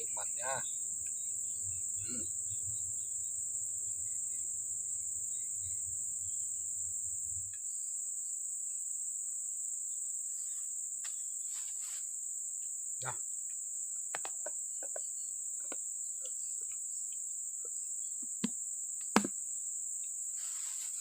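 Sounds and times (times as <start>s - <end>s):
insect chorus droning: 0.0s - 21.0s.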